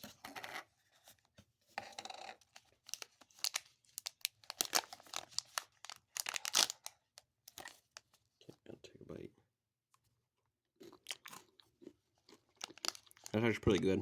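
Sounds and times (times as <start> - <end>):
packaging tearing: 2.5 - 8.0, 12.6 - 13.3
packaging crinkling: 2.5 - 8.1, 12.5 - 13.4.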